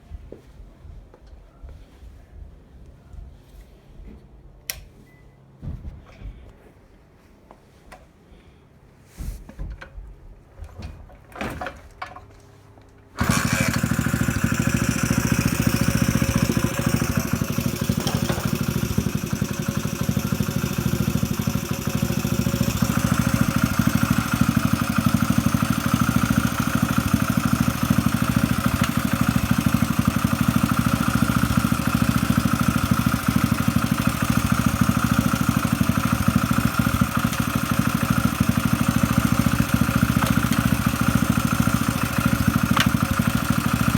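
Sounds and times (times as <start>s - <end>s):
engine knocks: 13.2s - 43.9s
motorcycle engine running: 13.2s - 43.9s.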